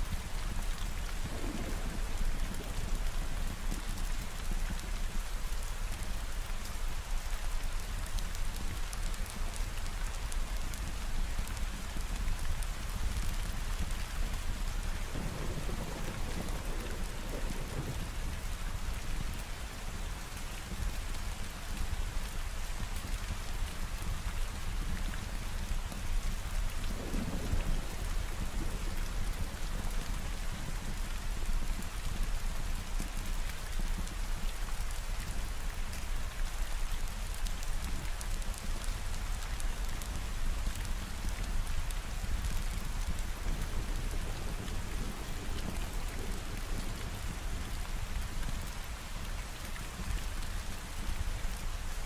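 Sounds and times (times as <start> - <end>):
steady rain falling: 0.0 - 52.0
low rumble of thunder: 0.1 - 7.2, 11.7 - 21.1, 23.9 - 32.9, 37.8 - 51.6.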